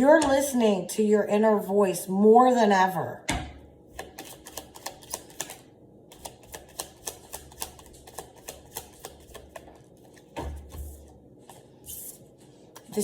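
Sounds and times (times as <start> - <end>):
cards shuffling: 4.0 - 13.0.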